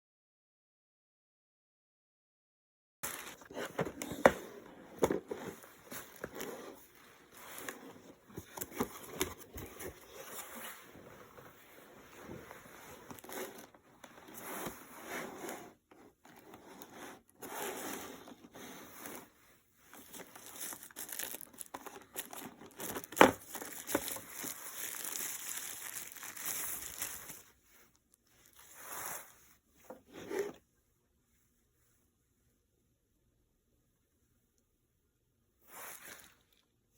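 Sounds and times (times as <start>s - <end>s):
packaging crinkling and tearing: 3.0s - 4.2s, 19.9s - 27.5s.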